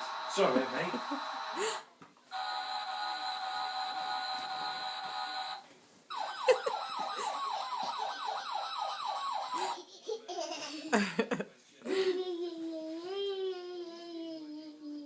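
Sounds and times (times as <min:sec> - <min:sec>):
ambulance siren yelping: 0:00.0 - 0:09.8.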